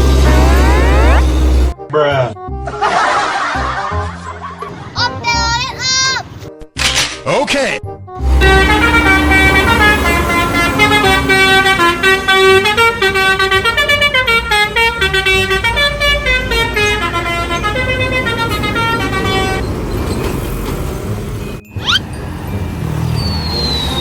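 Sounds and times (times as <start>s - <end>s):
low engine rumble: 0.0s - 1.7s
multi-tone air horn tune: 8.2s - 19.7s.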